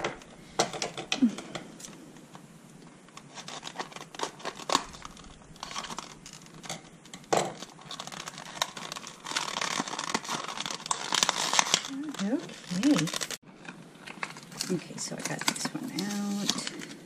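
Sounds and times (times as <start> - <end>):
packaging crinkling and tearing: 2.9 - 17.0
scissors snipping packaging: 3.1 - 6.8, 7.5 - 13.4.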